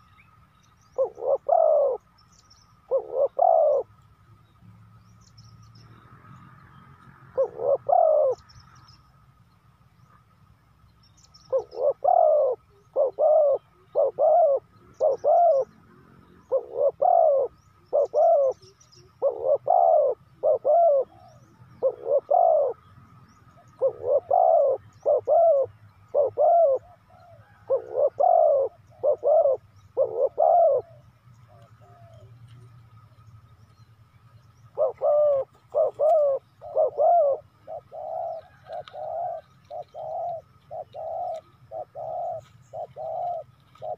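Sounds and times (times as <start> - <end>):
dove cooing: 0.9 - 2.2, 2.8 - 4.0, 7.3 - 8.6, 11.4 - 22.9, 23.5 - 32.8, 34.6 - 43.9.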